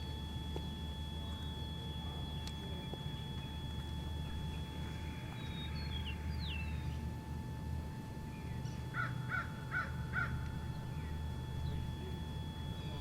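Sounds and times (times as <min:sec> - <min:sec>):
low outdoor rumble: 0:00.0 - 0:13.0
faint bird whistles: 0:05.3 - 0:07.1
crow cawing: 0:08.9 - 0:10.5.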